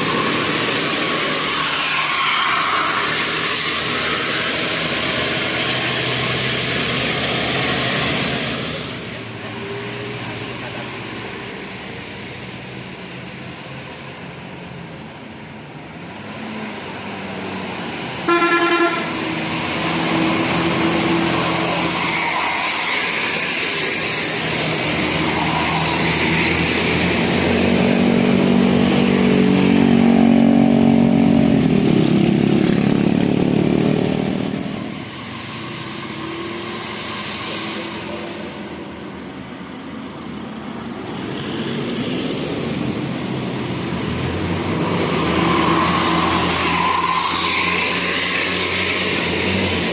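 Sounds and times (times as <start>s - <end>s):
large vehicle passing: 16.3s - 49.9s
bus horn toot: 18.2s - 19.3s.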